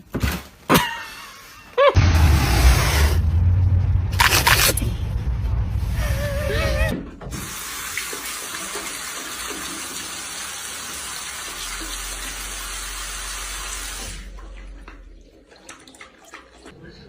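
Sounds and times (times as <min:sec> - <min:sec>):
running water: 0:06.0 - 0:17.0.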